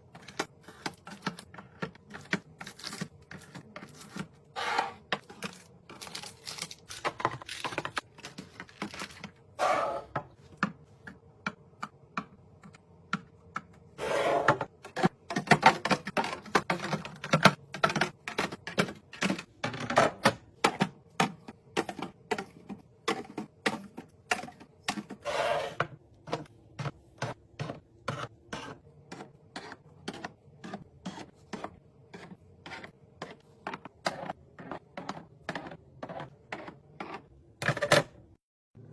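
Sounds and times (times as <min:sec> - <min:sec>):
household items clicking and tapping: 0:00.0 - 0:04.4, 0:05.0 - 0:09.5, 0:14.6 - 0:25.2, 0:25.8 - 0:38.1.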